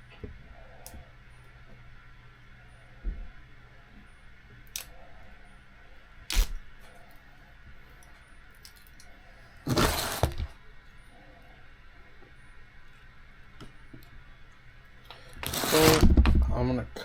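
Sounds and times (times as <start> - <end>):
noisy handling of parts: 6.3 - 10.6, 15.0 - 16.6.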